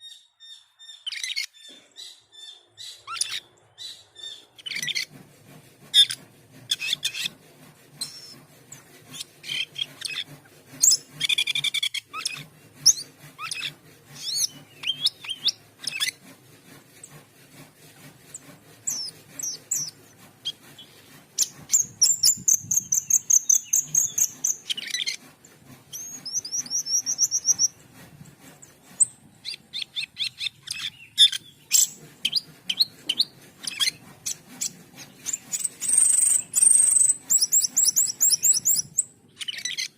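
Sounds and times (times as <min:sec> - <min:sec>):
bird singing chirps and whistles: 0:21.7 - 0:25.2, 0:35.5 - 0:39.9.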